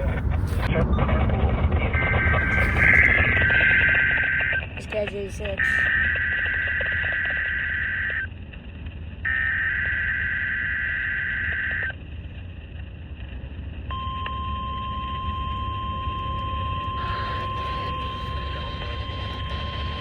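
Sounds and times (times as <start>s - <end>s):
radio hiss and hum: 0.0s - 6.0s, 16.8s - 20.0s
steady warning alarm tone: 2.0s - 8.2s, 13.9s - 20.0s.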